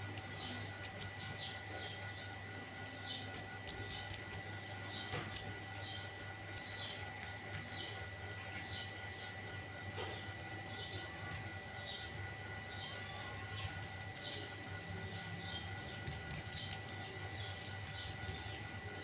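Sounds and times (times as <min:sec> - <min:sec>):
steady high whine: 0:00.0 - 0:19.0
songbird chirping: 0:10.6 - 0:19.0.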